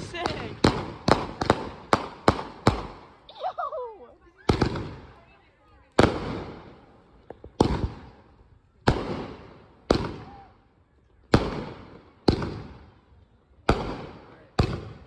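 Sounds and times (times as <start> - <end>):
fireworks bangs with rumble: 0.0 - 3.2, 4.4 - 5.2, 5.9 - 8.2, 8.8 - 10.5, 11.3 - 12.9, 13.7 - 15.0.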